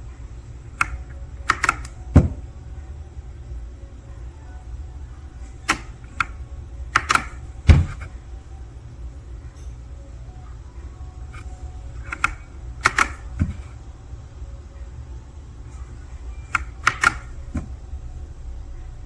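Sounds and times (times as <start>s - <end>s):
sharp clicks and knocks: 0.8s - 2.4s, 11.4s - 13.8s, 16.5s - 17.8s
steady low rumble: 17.2s - 19.0s.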